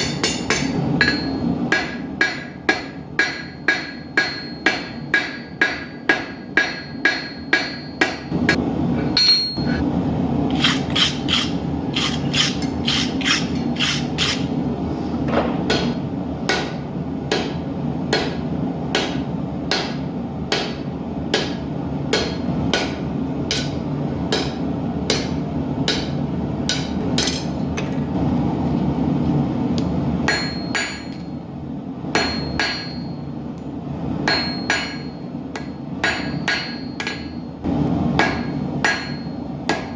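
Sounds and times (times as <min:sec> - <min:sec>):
hammer striking steel on anvil: 0:00.0 - 0:09.8, 0:15.6 - 0:27.9, 0:30.2 - 0:31.4, 0:32.1 - 0:33.3, 0:34.2 - 0:37.5, 0:38.1 - 0:39.9
gas forge roaring: 0:00.0 - 0:39.9.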